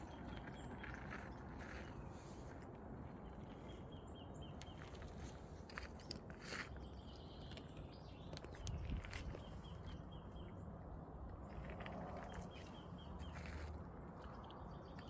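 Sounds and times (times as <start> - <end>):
birds chirping: 0.0 - 10.8.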